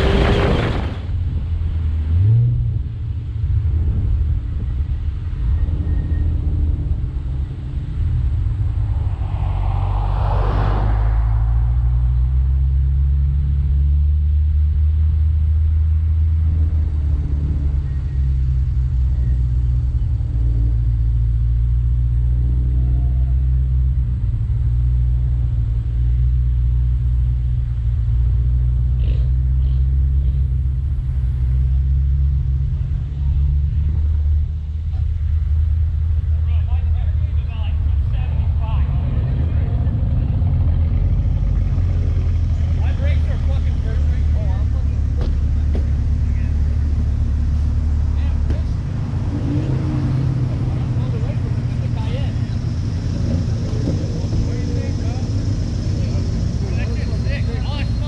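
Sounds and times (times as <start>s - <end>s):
car engine droning: 0.0s - 58.0s
whooshing swell: 8.1s - 13.3s.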